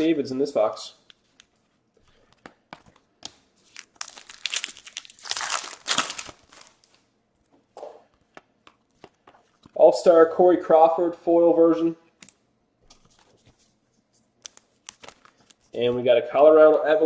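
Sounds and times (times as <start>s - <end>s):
foil wrapper crinkling and tearing: 3.2s - 7.0s, 14.4s - 15.8s.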